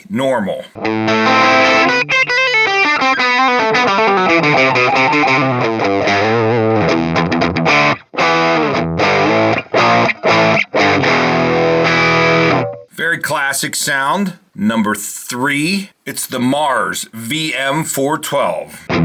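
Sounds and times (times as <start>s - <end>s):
electric guitar notes and chords: 0.8s - 12.9s.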